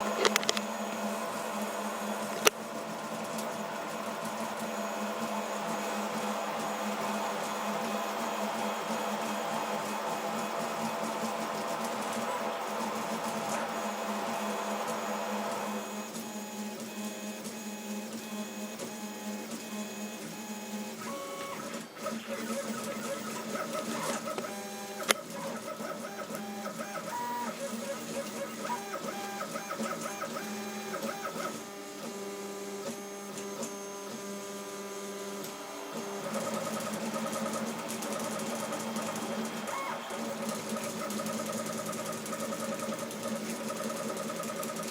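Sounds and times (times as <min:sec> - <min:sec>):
stepper motors whining: 0:00.0 - 0:16.0, 0:35.5 - 0:44.7.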